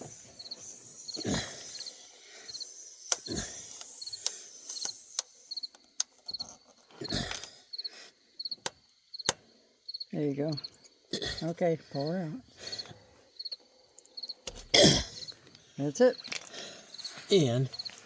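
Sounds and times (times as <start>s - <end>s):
tire plug tool scraping: 0.0s - 5.9s
crickets chirping: 0.0s - 18.0s
tire plug tool clicks: 3.1s - 5.4s.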